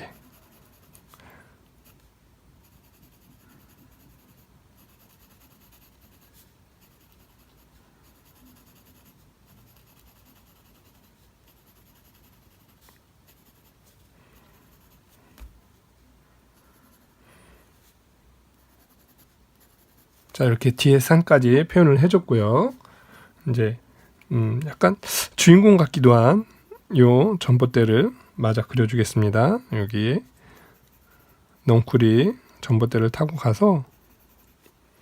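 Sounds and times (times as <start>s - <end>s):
pencil scratching on paper: 0.0s - 1.1s, 1.8s - 2.0s, 2.6s - 15.2s, 16.6s - 17.2s, 18.6s - 20.4s, 28.8s - 34.8s.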